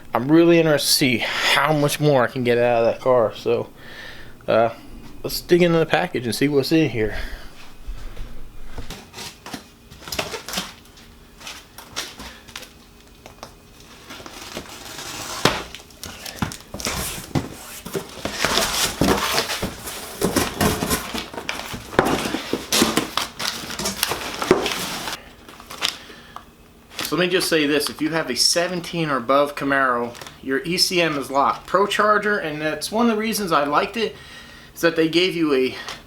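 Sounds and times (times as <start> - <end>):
packing material rustling: 7.7 - 26.0.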